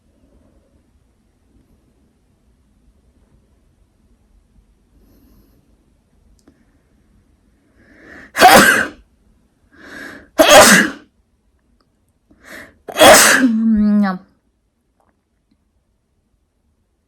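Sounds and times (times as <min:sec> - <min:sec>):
sharp in-breath: 0:07.8 - 0:08.4, 0:09.8 - 0:10.4, 0:12.4 - 0:12.8
person sneezing: 0:08.2 - 0:09.0, 0:10.2 - 0:11.0, 0:12.9 - 0:13.7.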